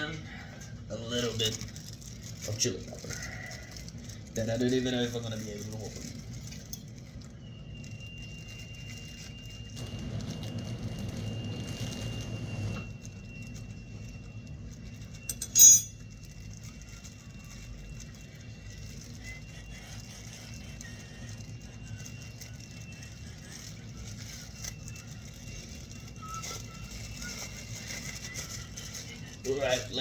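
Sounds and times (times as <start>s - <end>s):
faint high whine: 0.0s - 30.0s
rustling: 0.0s - 30.0s
low hum: 9.3s - 18.0s.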